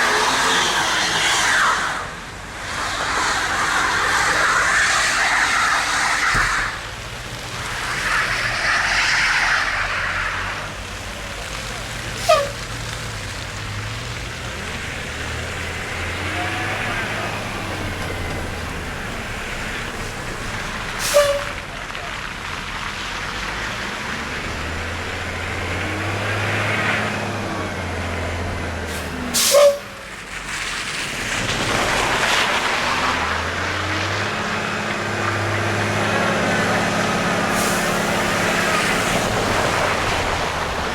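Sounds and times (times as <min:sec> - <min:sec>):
heavy vehicle engines running: 0:00.0 - 0:40.9
air brake hisses: 0:21.0 - 0:21.5, 0:28.9 - 0:30.0, 0:37.5 - 0:38.2.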